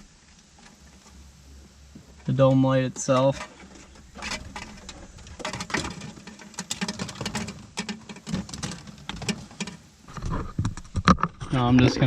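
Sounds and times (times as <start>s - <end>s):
hands handling wiring and plastic: 3.0s - 12.0s.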